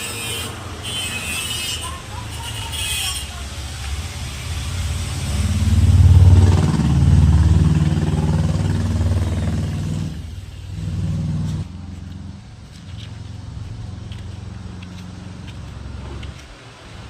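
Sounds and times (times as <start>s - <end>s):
engine running with deep hum: 3.6s - 17.0s.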